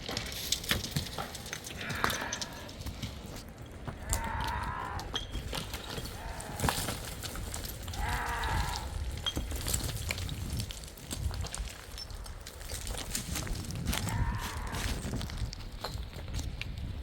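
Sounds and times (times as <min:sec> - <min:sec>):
livestock bleating: 0:08.0 - 0:09.0.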